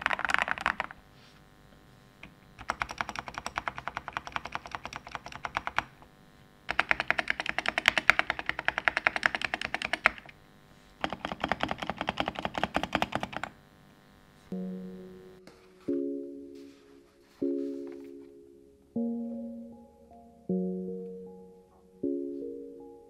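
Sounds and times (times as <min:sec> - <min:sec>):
keyboard typing: 0:00.0 - 0:01.0, 0:02.6 - 0:06.0, 0:06.7 - 0:10.4, 0:11.0 - 0:13.6
music notes: 0:14.5 - 0:23.0.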